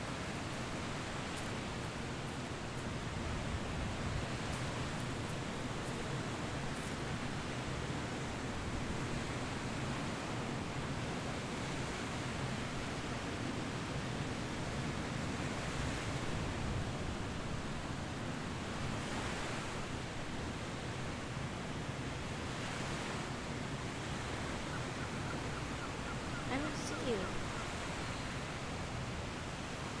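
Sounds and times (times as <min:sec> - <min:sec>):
ocean surf washing in: 0:26.5 - 0:30.0.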